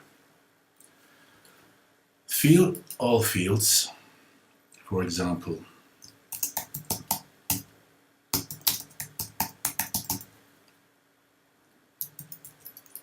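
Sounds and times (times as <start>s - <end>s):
typing on keyboard: 6.3s - 7.6s, 8.4s - 10.3s, 12.0s - 13.0s.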